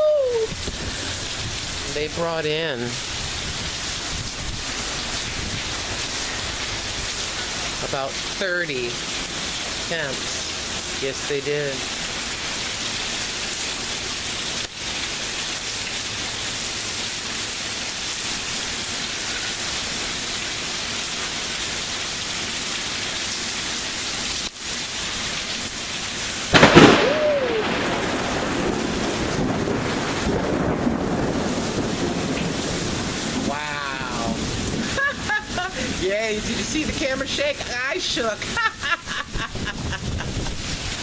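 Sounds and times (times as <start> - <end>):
heavy rain: 0.0 - 41.0
loud thunderclap: 26.5 - 35.6
thunder rumbling: 26.5 - 36.0.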